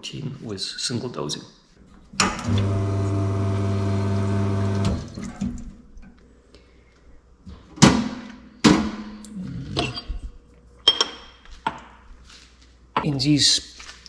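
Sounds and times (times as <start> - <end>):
pump humming with water running: 2.2 - 5.8.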